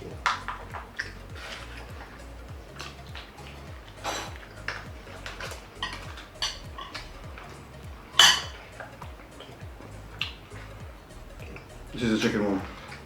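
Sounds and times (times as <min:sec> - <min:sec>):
cutlery clatter: 0:02.7 - 0:07.5, 0:08.2 - 0:09.6
cutlery clinking on plates: 0:02.7 - 0:09.6.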